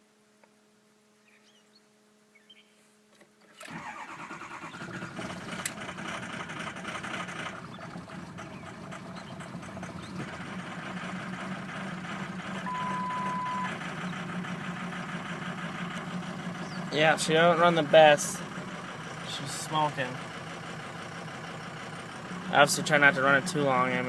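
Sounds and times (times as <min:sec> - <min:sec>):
diesel engine clattering: 0:03.7 - 0:24.0
beep: 0:12.7 - 0:13.7.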